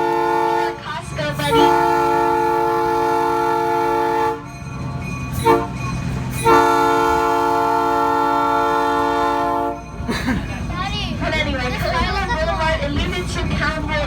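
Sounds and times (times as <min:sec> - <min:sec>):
train horn blasts: 0:00.0 - 0:04.6, 0:05.3 - 0:10.0
locomotive engine rumbling: 0:00.0 - 0:14.0.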